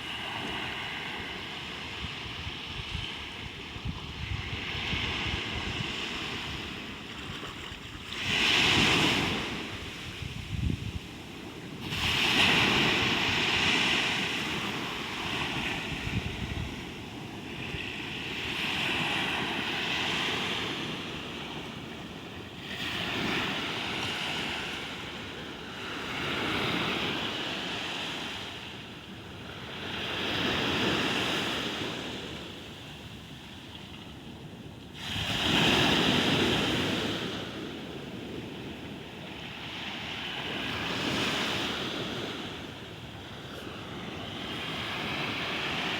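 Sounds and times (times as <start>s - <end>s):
ocean waves breaking: 11.3s - 32.4s, 35.0s - 45.9s.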